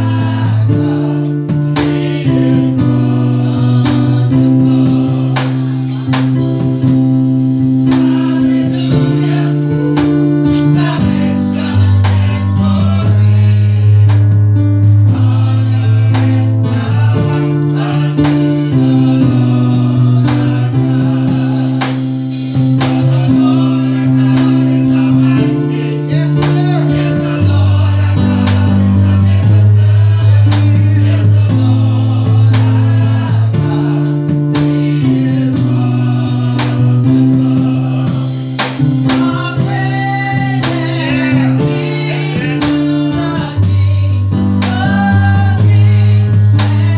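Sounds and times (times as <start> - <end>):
band playing bass chords and beat: 0.0 - 46.9
gospel choir singing: 0.0 - 46.9.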